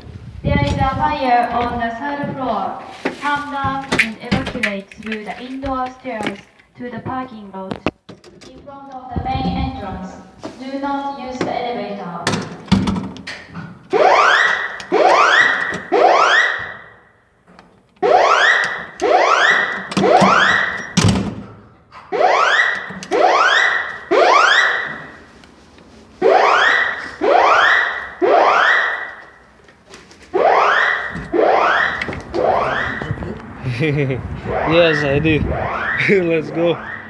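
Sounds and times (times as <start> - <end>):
whooping fire alarm sweep tones: 13.9 - 16.9, 18.0 - 21.0, 22.1 - 25.1, 26.2 - 29.3, 30.4 - 33.2, 34.4 - 37.0.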